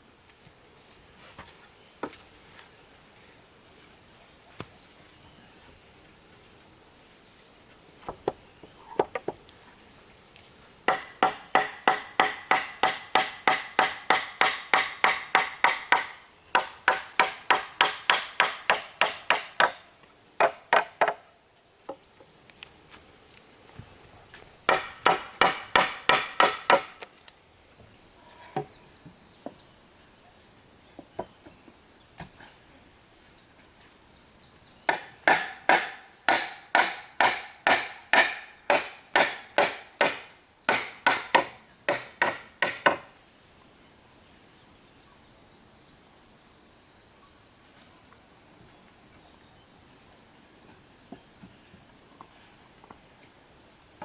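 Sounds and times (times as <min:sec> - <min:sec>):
high insect buzz: 0:00.0 - 0:54.0
hammer blows on wood: 0:10.9 - 0:19.8, 0:34.9 - 0:43.0.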